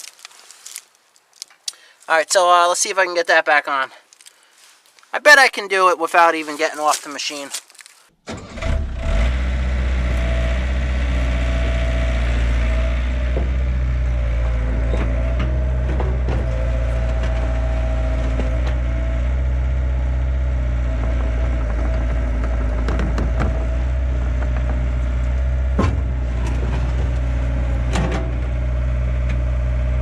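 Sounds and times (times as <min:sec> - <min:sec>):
hydraulic whine: 0:08.3 - 0:30.0
diesel engine running: 0:08.4 - 0:30.0
sharp knocks and cracks: 0:21.1 - 0:27.2.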